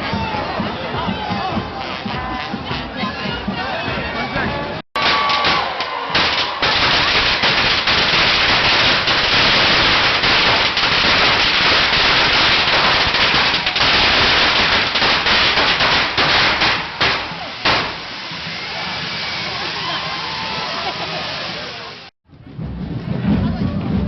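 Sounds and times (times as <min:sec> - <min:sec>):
firecrackers cracking: 0:05.0 - 0:22.1.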